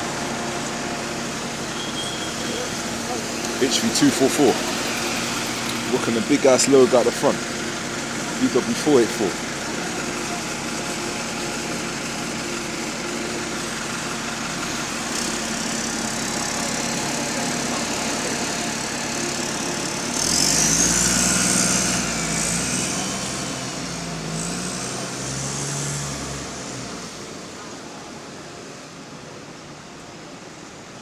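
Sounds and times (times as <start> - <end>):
bus diesel engine running: 0.0 - 31.0.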